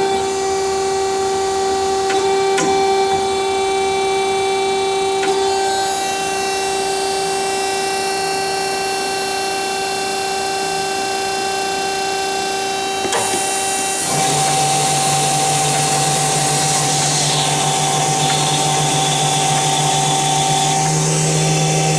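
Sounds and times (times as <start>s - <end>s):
bandsaw whining: 11.9s - 21.9s
low machine hum: 13.2s - 21.9s.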